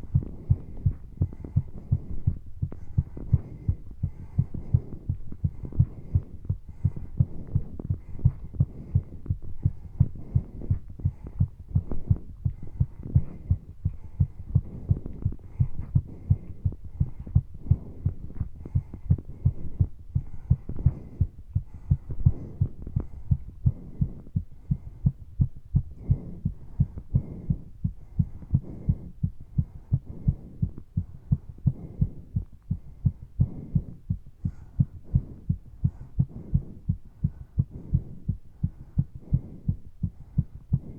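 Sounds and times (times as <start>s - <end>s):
heart beating fast: 0.0s - 40.9s
soft breathing: 0.0s - 40.9s.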